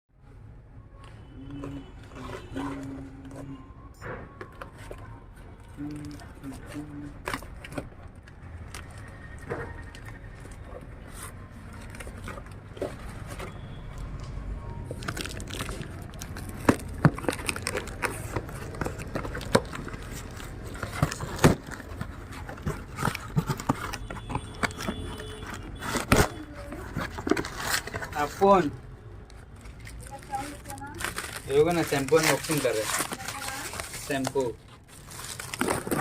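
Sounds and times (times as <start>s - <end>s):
package crinkling and clicking: 14.9s - 28.2s.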